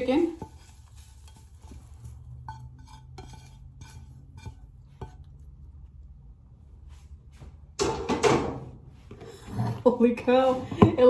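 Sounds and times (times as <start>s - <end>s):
utensil clinking against cookware: 0.0s - 5.5s.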